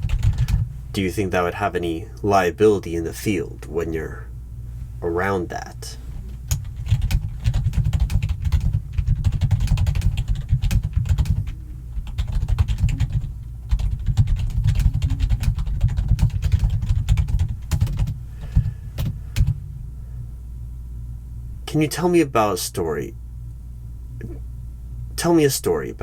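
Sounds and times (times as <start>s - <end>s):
fast typing on keyboard: 0.0s - 0.7s, 6.5s - 18.2s.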